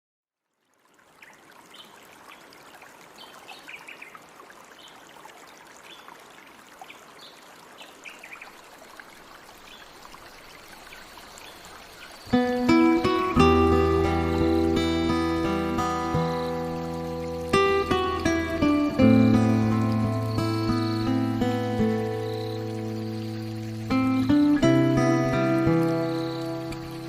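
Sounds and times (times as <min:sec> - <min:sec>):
small birds chirping: 0:01.1 - 0:05.1, 0:05.8 - 0:08.6, 0:09.5 - 0:27.0
waterfall rushing: 0:10.4 - 0:27.0
plucked acoustic guitar: 0:12.3 - 0:27.0.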